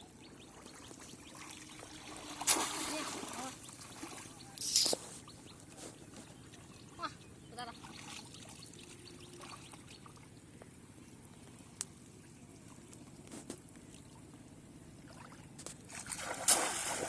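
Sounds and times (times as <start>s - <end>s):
shallow water trickling: 0.5s - 4.9s
sharp click: 4.6s - 5.0s.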